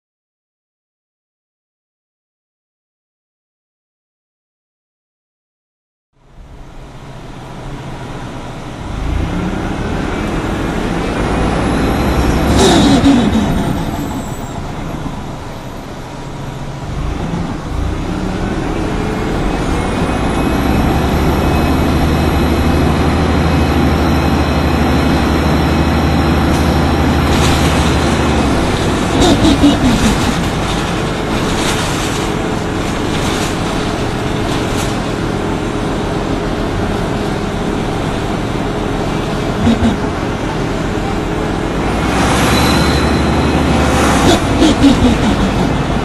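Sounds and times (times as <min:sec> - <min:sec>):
bus engine pulling under load: 0:06.2 - 0:46.0.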